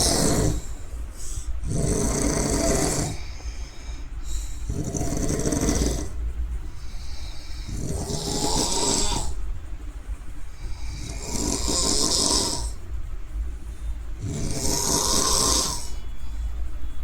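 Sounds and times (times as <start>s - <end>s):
person snoring: 0.0s - 3.5s, 4.2s - 6.2s, 6.8s - 9.4s, 10.7s - 12.8s, 14.2s - 16.0s.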